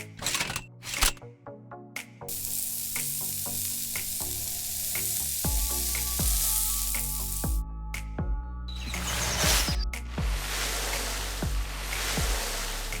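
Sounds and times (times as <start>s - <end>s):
background music with soft beat: 1.2s - 13.0s
steady hissing: 2.3s - 7.6s, 8.8s - 13.0s.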